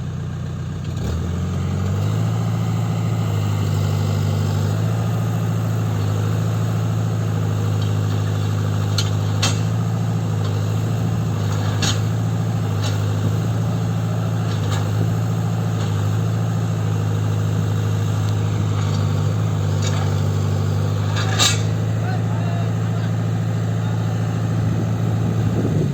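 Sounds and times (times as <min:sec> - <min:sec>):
excavator diesel engine idling: 0:00.0 - 0:25.9.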